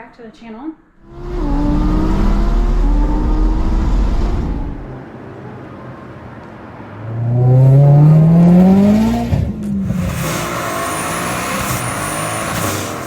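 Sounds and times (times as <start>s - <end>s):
car engine accelerating hard: 1.0s - 5.1s, 7.0s - 13.0s.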